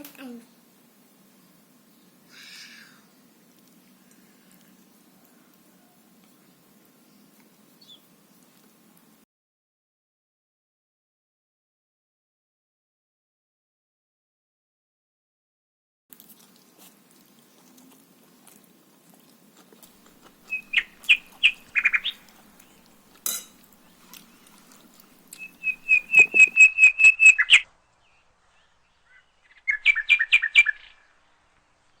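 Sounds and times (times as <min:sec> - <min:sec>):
bird chirping: 0:06.4 - 0:08.1, 0:20.4 - 0:22.9, 0:25.3 - 0:32.0.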